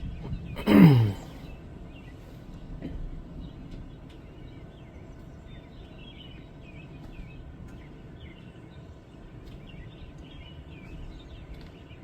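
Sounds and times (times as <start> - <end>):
small birds chirping: 3.4 - 12.0.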